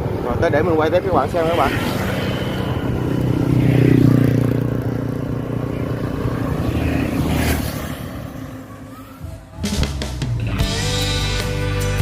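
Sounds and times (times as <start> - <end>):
vehicle engine running: 1.6 - 9.2.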